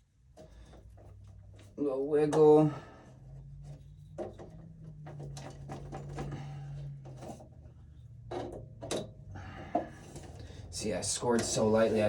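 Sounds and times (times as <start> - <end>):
low hum: 2.7 - 12.0.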